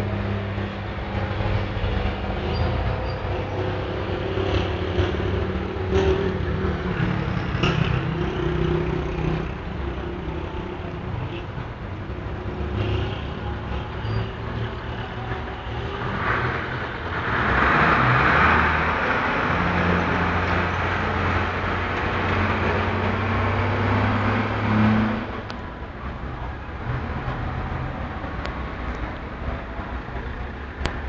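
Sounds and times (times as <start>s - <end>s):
traffic engines droning: 0.0s - 31.0s.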